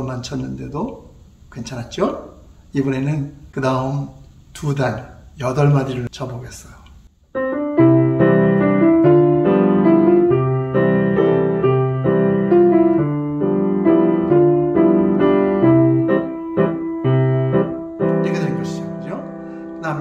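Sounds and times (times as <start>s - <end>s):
piano waltz accompaniment: 7.4s - 20.0s.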